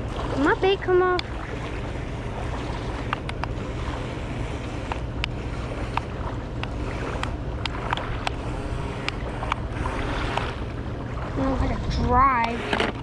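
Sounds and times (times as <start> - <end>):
water noise: 0.0 - 13.0
wind: 0.0 - 13.0.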